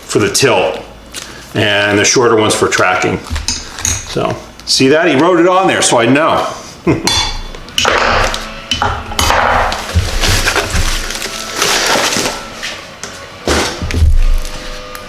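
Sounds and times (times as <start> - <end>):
packing material rustling: 9.7 - 12.9.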